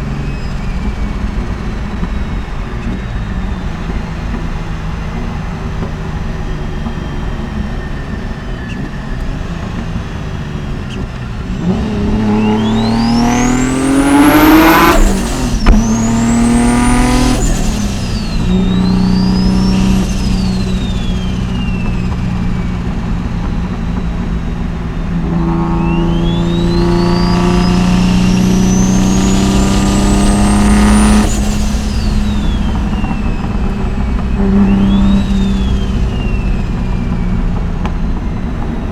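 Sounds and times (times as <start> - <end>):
car engine accelerating hard: 0.0 - 38.9
turbo whistle: 10.9 - 38.9.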